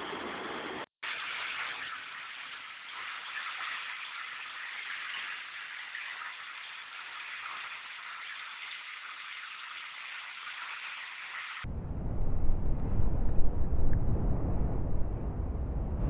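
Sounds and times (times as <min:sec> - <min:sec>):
loud low rumble: 0:11.7 - 0:16.0.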